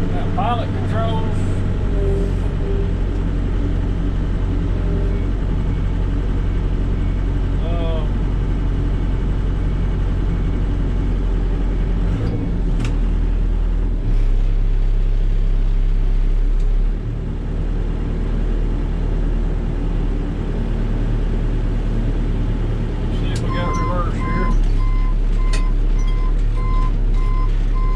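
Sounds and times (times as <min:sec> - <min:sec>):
backhoe diesel engine running: 0:00.0 - 0:27.9.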